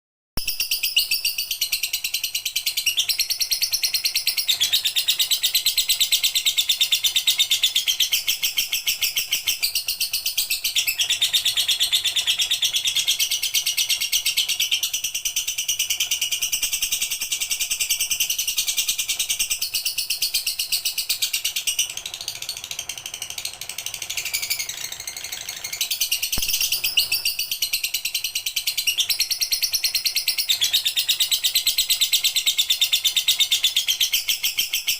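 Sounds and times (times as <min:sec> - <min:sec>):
lovebird chattering trills: 0:16.9 - 0:34.9.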